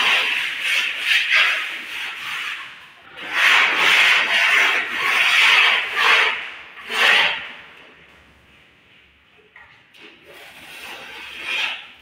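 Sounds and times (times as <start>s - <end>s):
plastering tool scraping cement: 0.0s - 7.6s, 10.0s - 12.0s.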